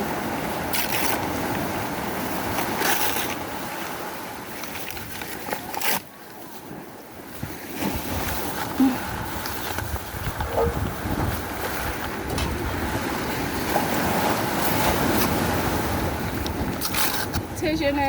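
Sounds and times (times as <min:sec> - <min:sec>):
sea surf: 0:00.0 - 0:18.0
wind noise: 0:07.4 - 0:18.0.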